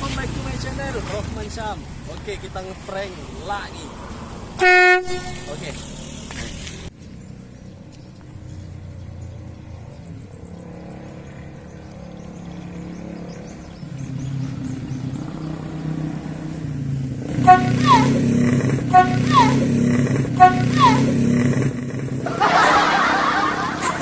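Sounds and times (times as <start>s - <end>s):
truck air horn blast: 4.6s - 5.8s, 17.4s - 21.3s
vehicle engine running: 4.6s - 24.0s.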